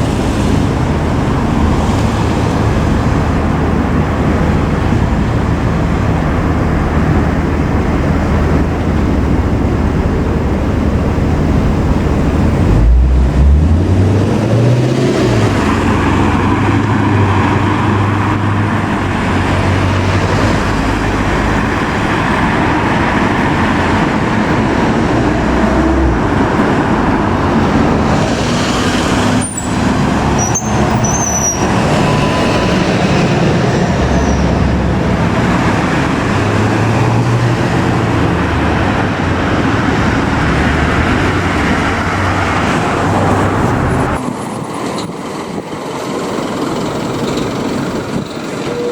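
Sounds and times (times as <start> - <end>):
heavy vehicle engine revving: 0.0 - 45.6
road traffic noise: 0.0 - 48.9.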